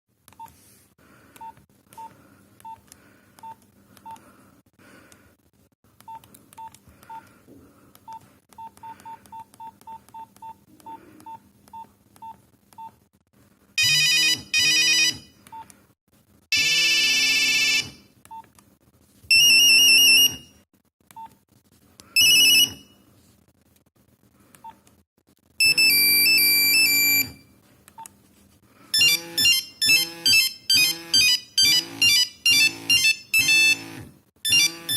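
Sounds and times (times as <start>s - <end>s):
mobile phone key beeps: 29.0s - 33.9s.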